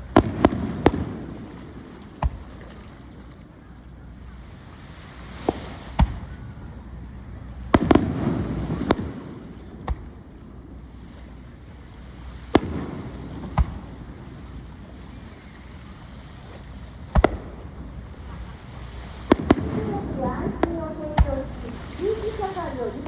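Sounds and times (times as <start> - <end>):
fireworks bursting: 0.0 - 3.3, 4.5 - 23.0.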